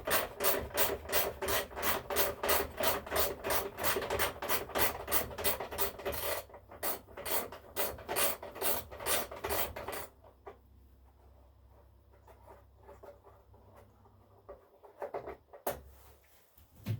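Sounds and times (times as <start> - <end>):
hand tool rasping: 0.0 - 10.1.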